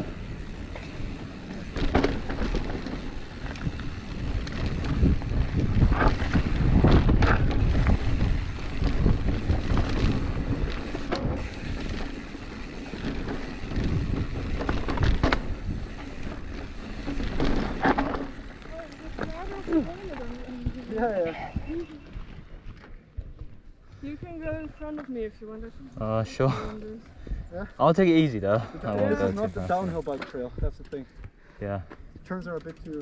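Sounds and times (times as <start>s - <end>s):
wind buffeting microphone: 0.0s - 17.8s, 19.0s - 26.0s
tyres rumbling on dirt: 0.0s - 21.3s
bike rattling: 0.0s - 26.3s, 27.9s - 31.3s, 32.1s - 33.0s.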